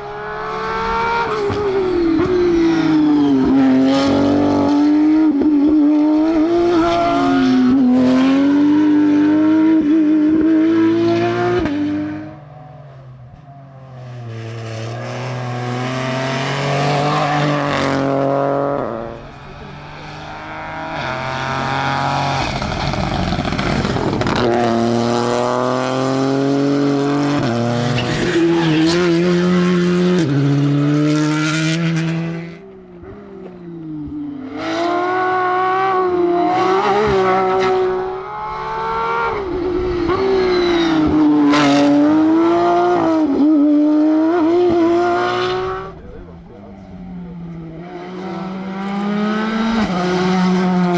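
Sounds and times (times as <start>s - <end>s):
rally car engines revving: 0.0s - 50.9s.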